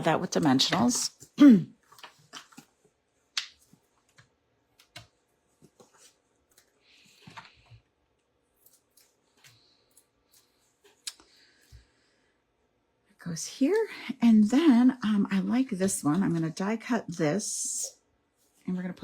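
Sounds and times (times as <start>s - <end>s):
paper rustle: 1.8s - 2.8s.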